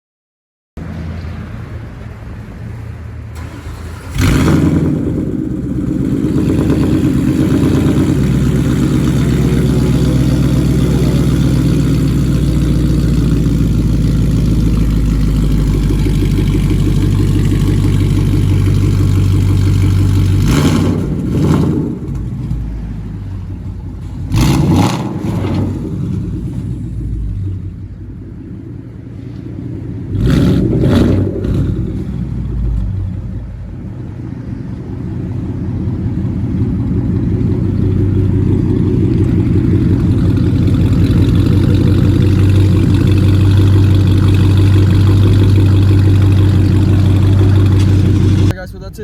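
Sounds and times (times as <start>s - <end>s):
car engine starting and running: 0.8s - 49.0s
engine revving: 3.4s - 23.1s, 24.1s - 27.8s, 30.1s - 33.0s, 36.6s - 48.6s.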